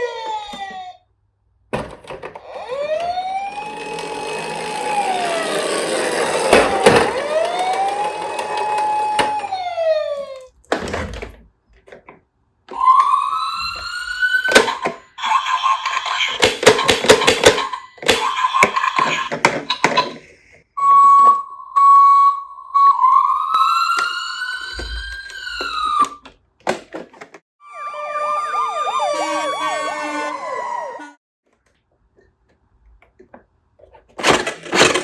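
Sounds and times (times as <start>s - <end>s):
emergency vehicle siren wailing: 2.5s - 10.5s, 12.7s - 15.4s, 20.8s - 26.2s, 27.6s - 31.2s.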